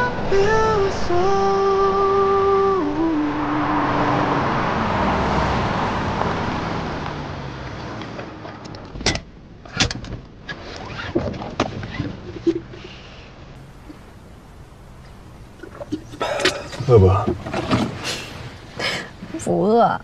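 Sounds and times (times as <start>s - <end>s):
car road noise: 0.0s - 19.8s.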